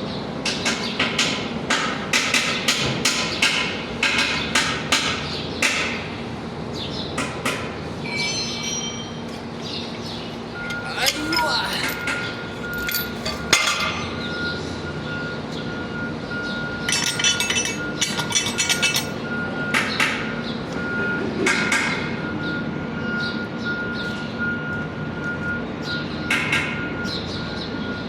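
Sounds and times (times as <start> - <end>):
rapid metal clinks: 10.7 - 14.1, 16.9 - 19.2
metal-on-metal clanks: 10.7 - 14.2, 16.8 - 19.2.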